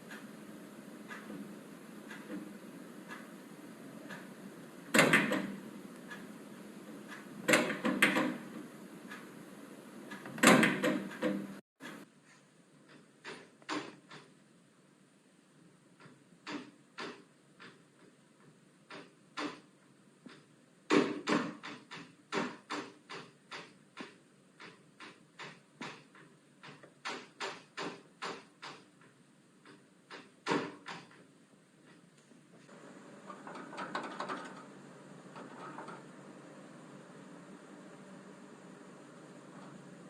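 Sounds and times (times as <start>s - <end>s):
door rattling in its frame: 4.9s - 5.6s, 7.4s - 8.5s, 10.2s - 11.6s, 33.3s - 36.2s.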